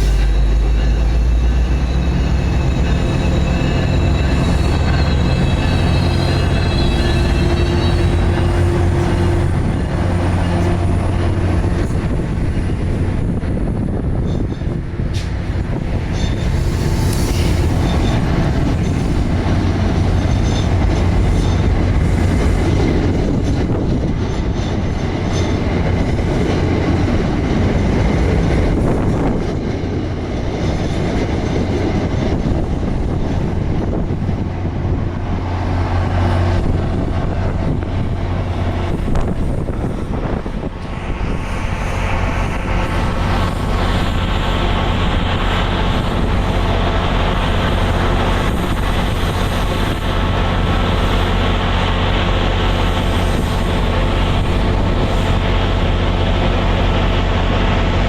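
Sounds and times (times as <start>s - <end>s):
high squeal: 0.0s - 13.0s, 15.8s - 22.3s
diesel train engine hum: 0.0s - 58.0s
train wheels rumbling on rails: 0.0s - 58.0s.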